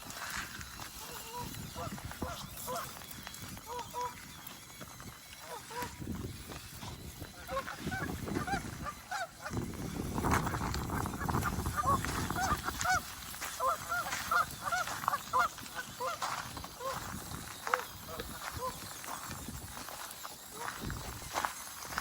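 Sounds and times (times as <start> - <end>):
bird honking calls: 3.6 - 4.5, 7.3 - 9.6, 10.5 - 19.0.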